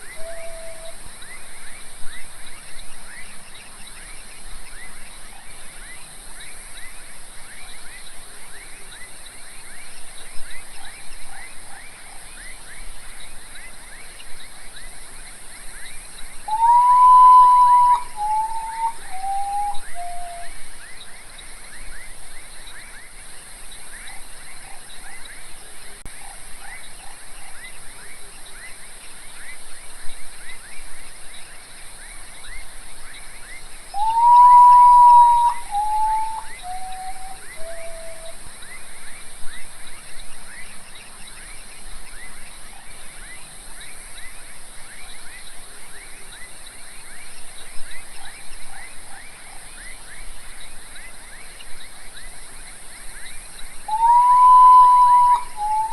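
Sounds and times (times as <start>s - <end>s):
potoo mournful whistled song: 0.0s - 1.0s, 16.4s - 20.6s, 33.9s - 38.4s, 53.9s - 55.9s
constant high hiss: 0.0s - 55.9s.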